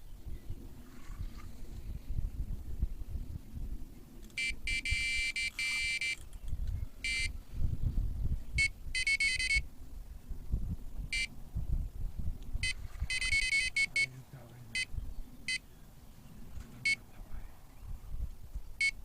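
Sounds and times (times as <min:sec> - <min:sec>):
electronic bite alarm beeping: 0:04.4 - 0:06.2, 0:07.0 - 0:07.3, 0:08.6 - 0:09.6, 0:11.1 - 0:11.3, 0:12.6 - 0:14.1.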